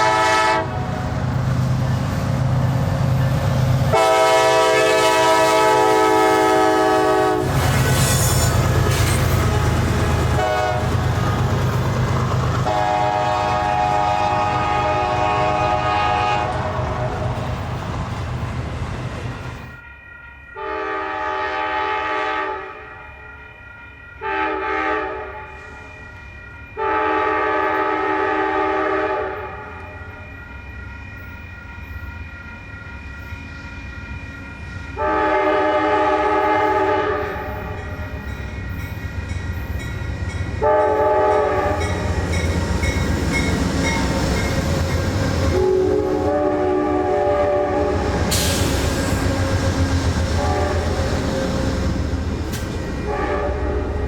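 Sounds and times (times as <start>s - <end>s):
locomotive horn blasts: 0.0s - 1.1s, 3.9s - 11.4s, 12.7s - 17.4s, 20.6s - 23.0s, 24.2s - 25.6s, 26.8s - 30.0s, 35.0s - 38.1s, 40.6s - 44.2s, 45.0s - 51.6s, 53.0s - 54.0s
train rumble and wheel clatter: 0.0s - 54.0s.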